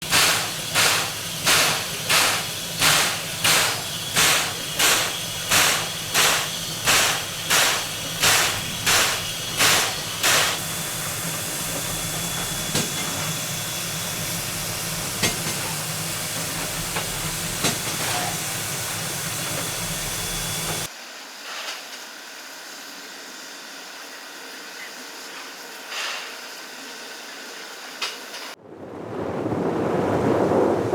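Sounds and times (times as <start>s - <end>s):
steam hissing: 0.0s - 20.9s
steam locomotive chuffing: 0.0s - 20.9s.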